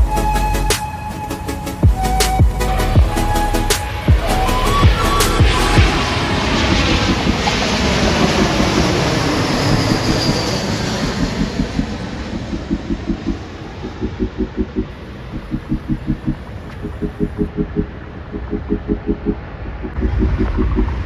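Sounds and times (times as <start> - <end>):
regular pulsing: 0.0 - 17.6
jet airliner passing: 3.8 - 14.1.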